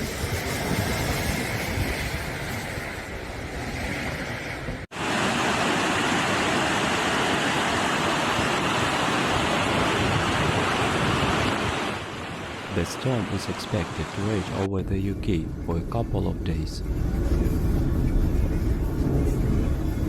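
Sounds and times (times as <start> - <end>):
steady rushing noise: 4.6 - 20.0
fast-flowing floodwater rushing: 4.9 - 14.7.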